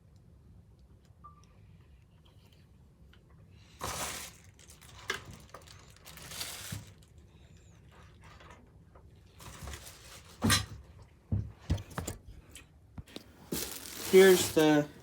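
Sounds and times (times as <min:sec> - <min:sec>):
packing material rustling: 0:03.8 - 0:07.2, 0:13.1 - 0:15.0.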